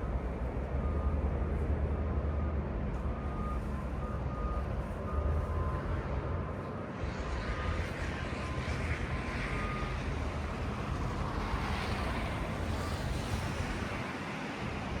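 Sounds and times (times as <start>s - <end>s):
road traffic rumble: 0.0s - 15.0s
wind noise: 6.9s - 15.0s.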